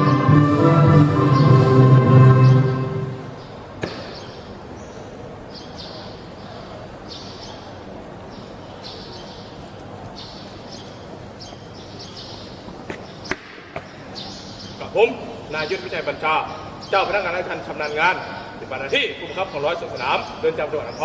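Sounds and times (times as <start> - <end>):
music: 0.0 - 3.4
outdoor background noise: 2.4 - 21.0.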